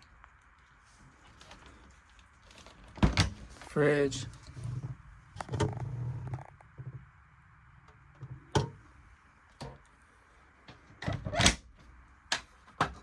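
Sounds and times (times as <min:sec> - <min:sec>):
knocks of objects being handled: 0:12.3 - 0:13.0.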